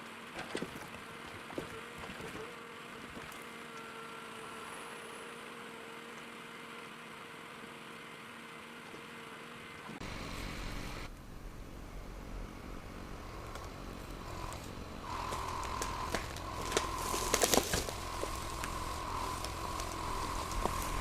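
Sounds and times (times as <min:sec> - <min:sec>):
heavy machinery engine humming: 0:00.0 - 0:21.0
deep engine rumble: 0:10.0 - 0:21.0.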